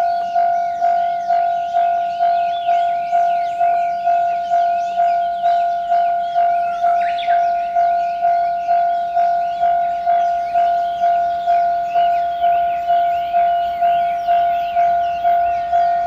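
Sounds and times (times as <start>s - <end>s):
level crossing warning bell: 0.0s - 16.0s.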